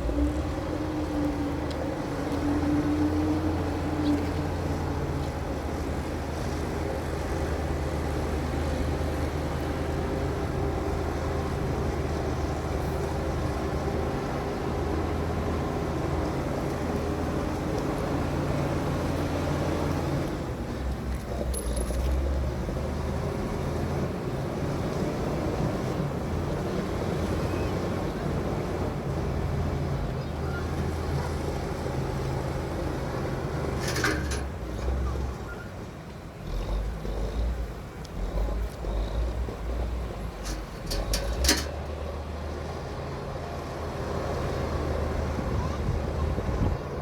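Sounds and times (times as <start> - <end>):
bulldozer diesel engine rumbling: 0.0 - 47.0
sharp metal clanks: 33.8 - 35.0, 40.4 - 41.9.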